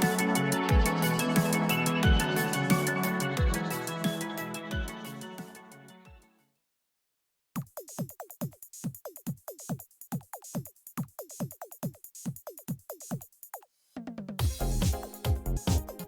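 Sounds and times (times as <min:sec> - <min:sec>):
electronic music: 0:00.0 - 0:06.1, 0:14.4 - 0:16.0
synth track: 0:00.0 - 0:06.2, 0:14.4 - 0:16.0
drum machine kicks: 0:00.7 - 0:01.0, 0:02.0 - 0:02.4, 0:14.2 - 0:16.0
hi-hat ticks: 0:07.6 - 0:13.6.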